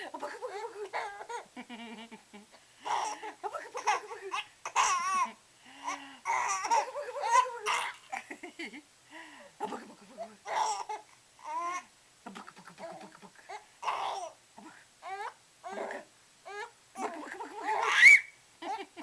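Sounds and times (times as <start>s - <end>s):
baby laughing: 0.2s - 8.4s, 10.5s - 11.8s, 17.0s - 19.0s.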